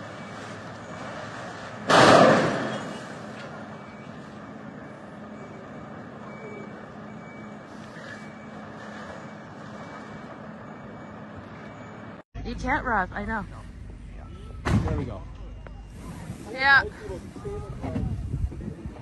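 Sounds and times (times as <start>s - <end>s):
vehicle running: 0.0s - 19.0s
sudden loud noise burst: 1.9s - 3.2s.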